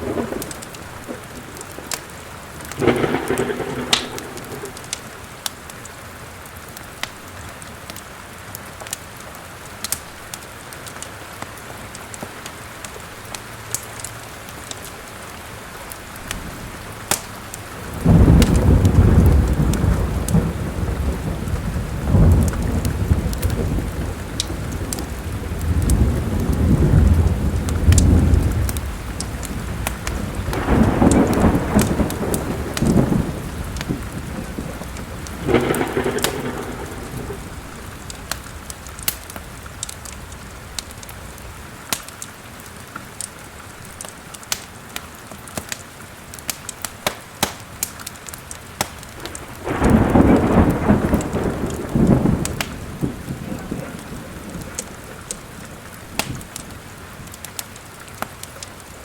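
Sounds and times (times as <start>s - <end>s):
low thunder rumble: 0.0s - 5.7s, 17.7s - 41.6s, 49.1s - 56.9s
thunderclap: 0.0s - 5.7s, 17.8s - 41.1s, 48.8s - 56.7s
steady rain: 0.0s - 59.0s
wood fire crackling: 0.0s - 59.0s.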